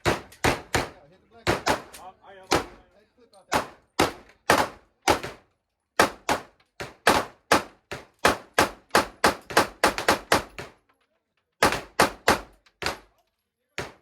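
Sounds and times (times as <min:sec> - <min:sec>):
rapid gunshots: 0:00.0 - 0:02.8, 0:03.5 - 0:05.4, 0:06.0 - 0:10.8, 0:11.6 - 0:13.1.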